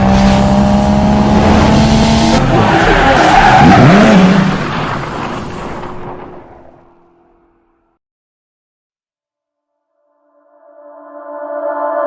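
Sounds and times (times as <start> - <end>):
tyres skidding: 0.0 - 7.5
car engine: 0.0 - 8.0.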